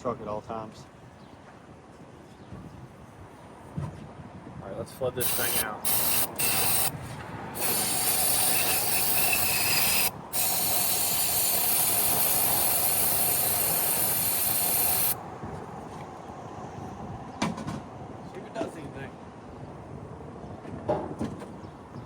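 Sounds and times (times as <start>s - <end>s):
aerosol can spraying hiss: 5.2s - 7.0s, 7.6s - 15.2s.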